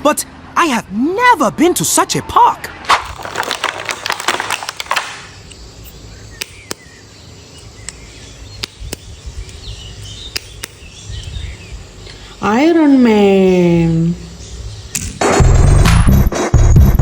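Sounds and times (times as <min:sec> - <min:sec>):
faint steady background noise: 0:00.0 - 0:15.2
sharp clicks and taps: 0:06.4 - 0:06.8, 0:08.6 - 0:11.4.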